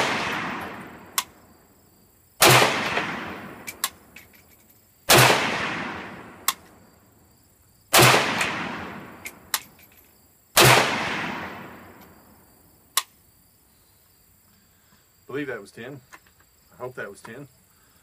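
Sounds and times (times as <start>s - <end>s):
rifle shots with echo: 0.0s - 1.4s, 2.4s - 4.1s, 5.1s - 6.7s, 7.9s - 9.6s, 10.6s - 12.1s
faint sharp clicks: 12.9s - 13.2s.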